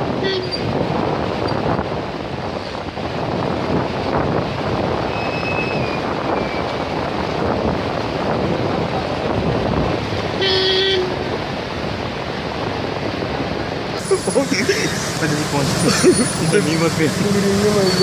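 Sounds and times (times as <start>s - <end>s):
floodwater rushing: 0.1s - 18.0s
horn honk: 0.2s - 0.7s, 10.4s - 11.2s.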